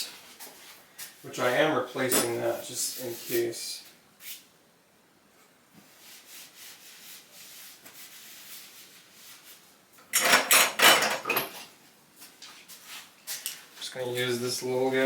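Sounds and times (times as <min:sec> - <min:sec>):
hand tools being rummaged: 0:10.2 - 0:11.7.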